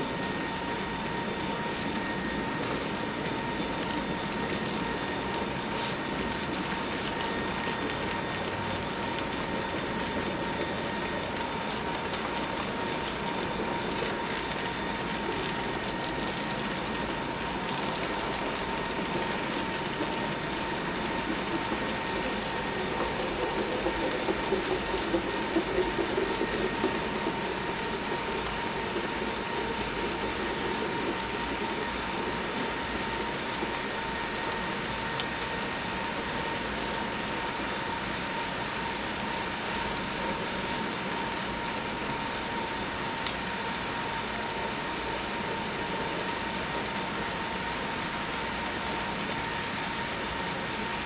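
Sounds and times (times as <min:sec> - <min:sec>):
freight train on track: 0:17.8 - 0:33.8.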